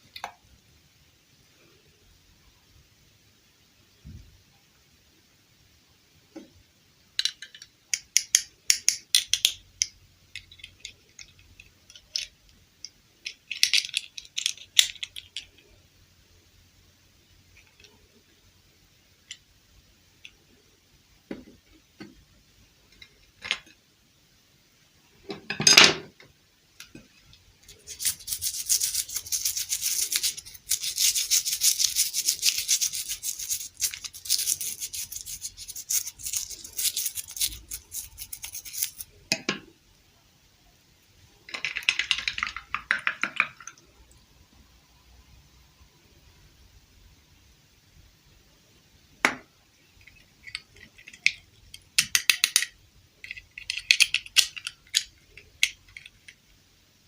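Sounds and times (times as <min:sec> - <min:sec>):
rapid scratching on small object: 0:27.7 - 0:39.1.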